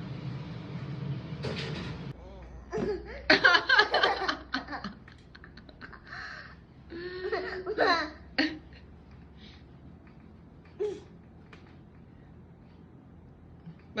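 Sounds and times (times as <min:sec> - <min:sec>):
young children laughing: 0:02.6 - 0:08.9.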